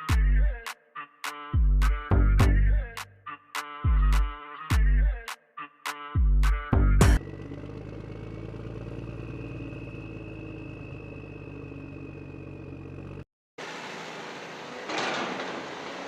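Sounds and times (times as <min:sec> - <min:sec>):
music with a beat: 0:00.0 - 0:07.2.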